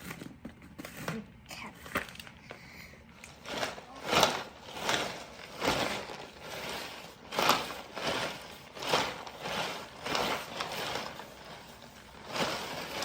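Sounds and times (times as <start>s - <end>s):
ice rattling in a rolled jar: 3.2s - 13.0s.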